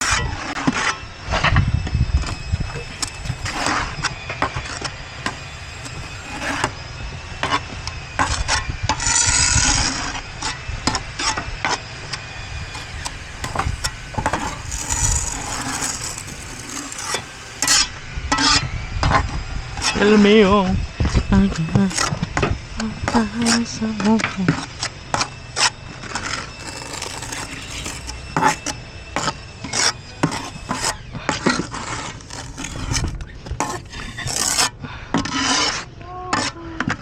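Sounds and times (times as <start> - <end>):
roof tiles scraping: 2.2 - 7.8, 12.2 - 18.6, 19.6 - 23.7, 25.1 - 35.7.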